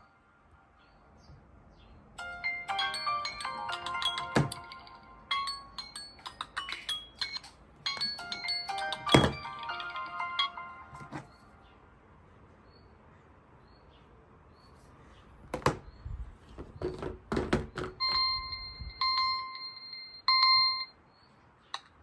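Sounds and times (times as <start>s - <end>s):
phone alarm beeps: 17.7s - 21.0s.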